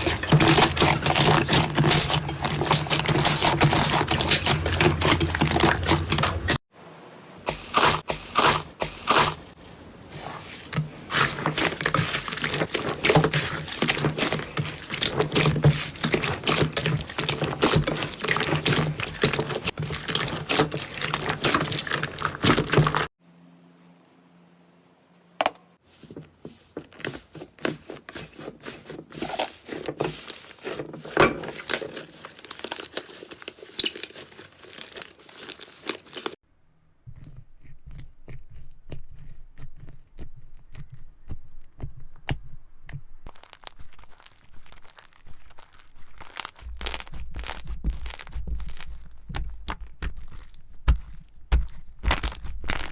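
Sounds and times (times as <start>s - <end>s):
slime squishing with wet crackles: 0.0s - 6.6s, 7.8s - 23.1s, 26.9s - 36.4s, 37.0s - 52.9s.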